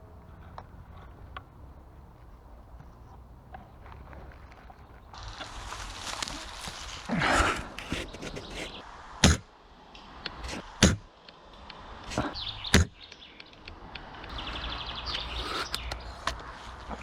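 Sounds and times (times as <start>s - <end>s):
airsoft rifle shots: 9.2s - 9.5s.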